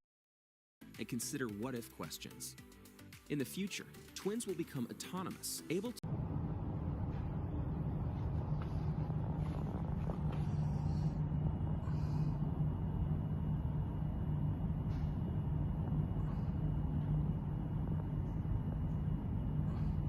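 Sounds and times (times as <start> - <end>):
low machine hum: 6.0 - 20.0.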